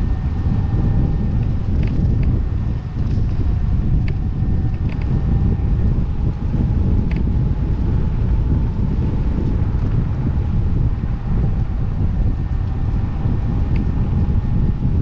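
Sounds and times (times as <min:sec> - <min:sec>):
faint steady whine: 0:00.0 - 0:15.0
wind buffeting microphone: 0:00.0 - 0:15.0.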